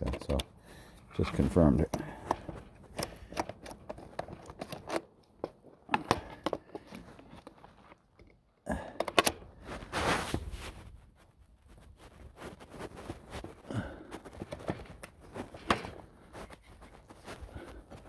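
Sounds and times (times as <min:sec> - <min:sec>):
clicks and knocks handling chainsaw: 0:00.0 - 0:09.6, 0:13.8 - 0:18.0.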